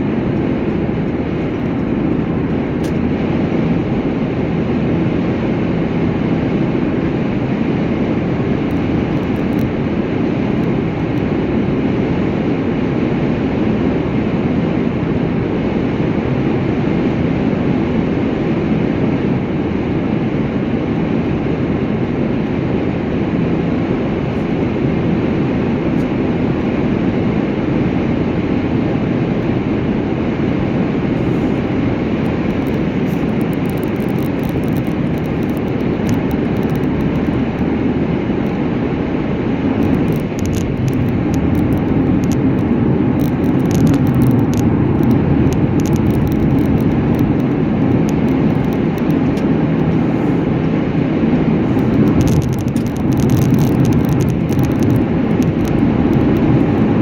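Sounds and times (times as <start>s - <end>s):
car road and engine noise: 0.0s - 57.0s
faint crackles: 30.5s - 38.6s, 39.6s - 50.7s, 51.3s - 57.0s.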